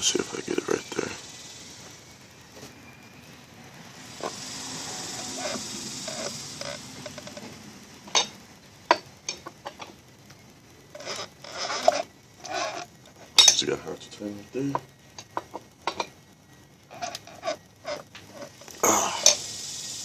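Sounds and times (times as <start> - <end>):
engine rubbing sound: 0.0 - 8.6, 10.9 - 13.3, 16.8 - 20.0.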